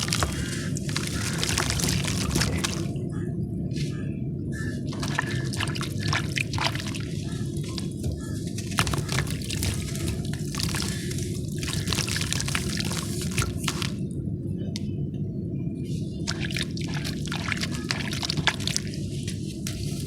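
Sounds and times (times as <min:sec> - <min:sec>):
chalk crumbling in water: 0:00.0 - 0:03.0, 0:07.7 - 0:14.0
water drips and splashes: 0:00.0 - 0:03.2, 0:04.6 - 0:14.0, 0:16.2 - 0:20.0
crackles: 0:00.0 - 0:05.4, 0:07.1 - 0:14.1
low water wash: 0:00.0 - 0:20.0.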